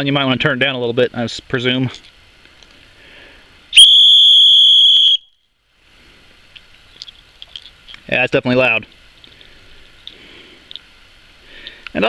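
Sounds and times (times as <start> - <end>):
high-pitched whistle blast: 3.8 - 5.4.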